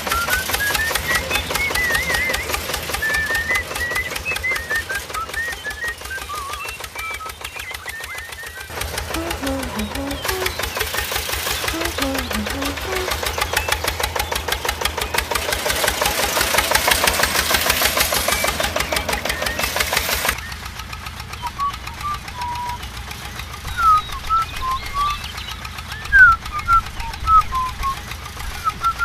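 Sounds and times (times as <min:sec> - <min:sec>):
small engine knocking: 0:00.0 - 0:29.0
short high chirps: 0:09.2 - 0:13.6.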